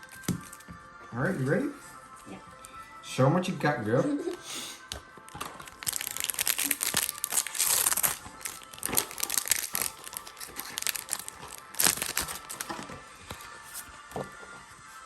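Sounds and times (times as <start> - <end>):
foil wrapper crinkling: 5.2 - 13.4.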